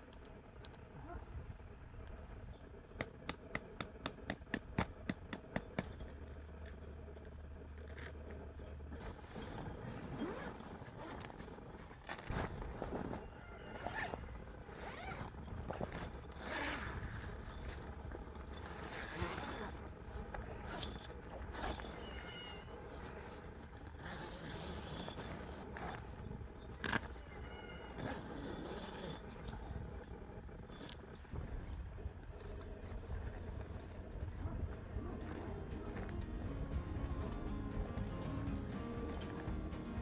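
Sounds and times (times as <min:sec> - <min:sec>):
scraping and rustling handling: 0:06.1 - 0:36.7.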